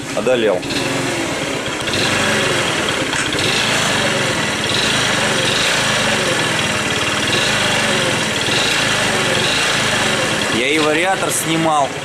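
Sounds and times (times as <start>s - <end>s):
scooter engine idling with knock: 0.0s - 12.0s.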